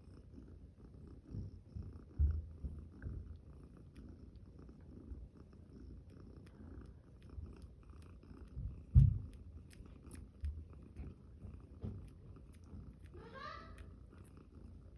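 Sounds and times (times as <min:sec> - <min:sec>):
cat purring: 0:00.0 - 0:14.9
small clicks and rustles: 0:02.0 - 0:14.9
low thump: 0:08.9 - 0:09.4.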